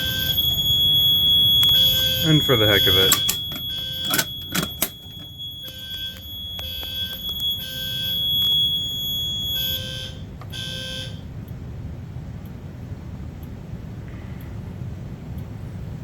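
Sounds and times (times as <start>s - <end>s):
fire alarm high-pitched tone: 0.0s - 11.2s
low steady hum: 0.0s - 16.0s.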